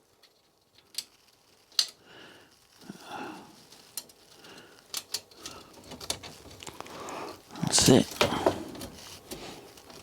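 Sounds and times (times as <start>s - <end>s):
soft handling noise: 3.6s - 10.0s.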